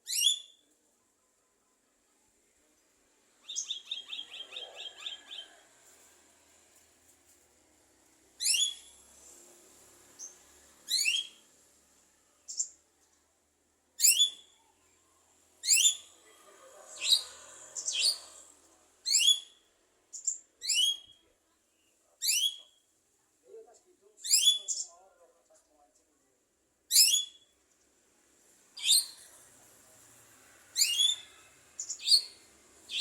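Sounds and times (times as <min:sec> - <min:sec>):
harsh bird calls: 0:03.4 - 0:05.6, 0:15.6 - 0:18.5, 0:30.8 - 0:33.0
bird whistling calls: 0:08.4 - 0:08.9, 0:10.9 - 0:11.4, 0:15.6 - 0:16.1, 0:19.1 - 0:19.6, 0:20.6 - 0:21.2, 0:26.9 - 0:27.4, 0:30.8 - 0:33.0.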